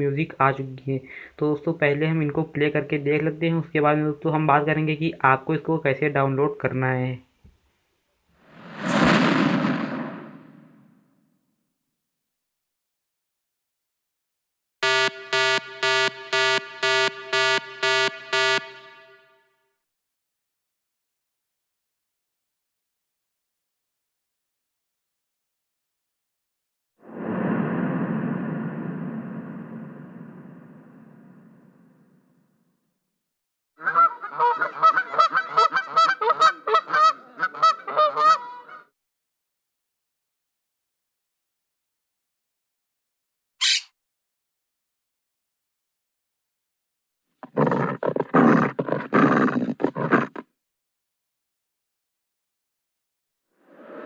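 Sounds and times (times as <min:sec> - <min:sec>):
buzzing alarm beeps: 0:14.8 - 0:19.4
soft held tone: 0:14.8 - 0:19.4.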